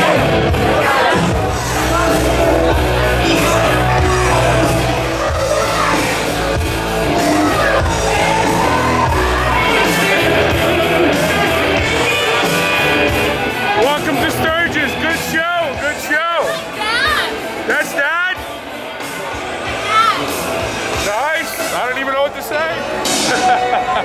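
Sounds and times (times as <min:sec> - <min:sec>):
loud music with singing: 0:00.0 - 0:21.9, 0:22.6 - 0:24.0
voices shouting: 0:00.0 - 0:24.0.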